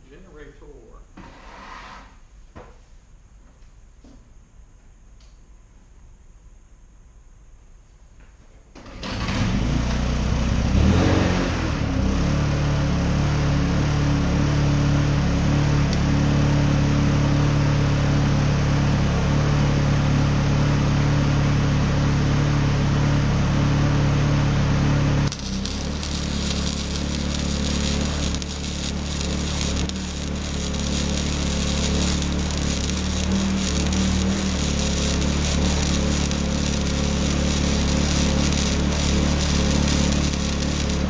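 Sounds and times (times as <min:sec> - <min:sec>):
generator engine running: 0:19.9 - 0:41.0
arc welder crackling hiss: 0:25.2 - 0:41.0.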